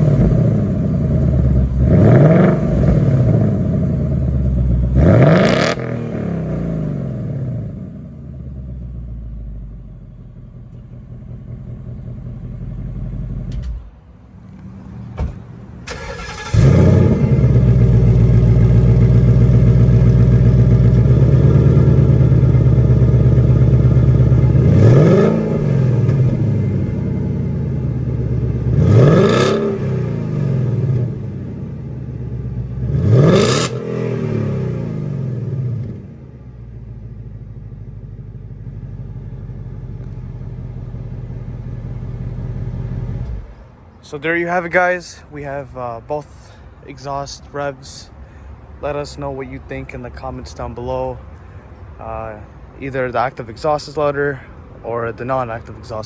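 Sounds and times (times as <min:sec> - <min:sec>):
car engine idling: 0:00.0 - 0:05.3, 0:06.0 - 0:14.9, 0:15.6 - 0:56.0
car engine revving: 0:00.0 - 0:09.0, 0:15.8 - 0:36.4.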